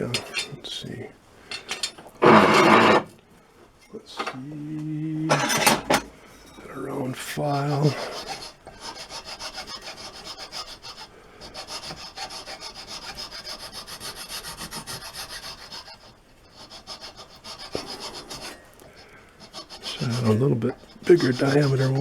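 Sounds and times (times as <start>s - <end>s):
file rasping on wood: 1.6s - 3.1s, 7.4s - 22.0s.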